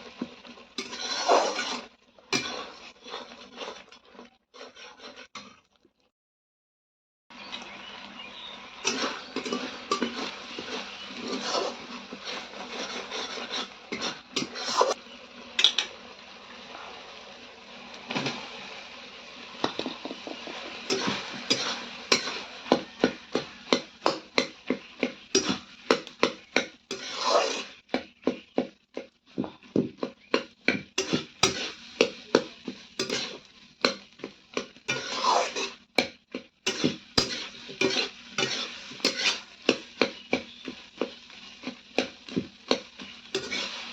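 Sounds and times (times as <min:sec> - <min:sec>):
metal utensils clinking on pot: 0:00.8 - 0:01.8, 0:08.8 - 0:11.7, 0:15.6 - 0:15.9, 0:20.8 - 0:22.4, 0:23.0 - 0:27.6, 0:30.4 - 0:35.8, 0:36.4 - 0:40.2, 0:42.7 - 0:43.8.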